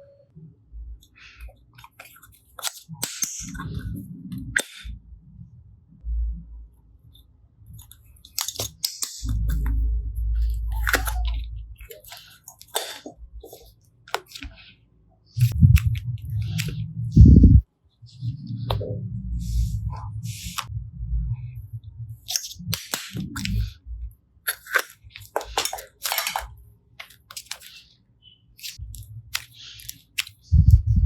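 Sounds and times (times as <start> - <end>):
slime squishing by hand: 1.1 - 4.9, 7.7 - 20.7, 22.1 - 31.0
low squelching: 7.1 - 31.0
air bubbles popping: 15.4 - 17.6.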